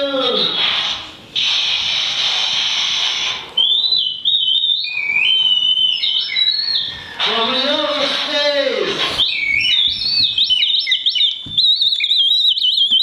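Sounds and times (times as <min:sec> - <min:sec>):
high hiss: 0:00.0 - 0:03.6
high whistle-like tones: 0:00.3 - 0:13.0.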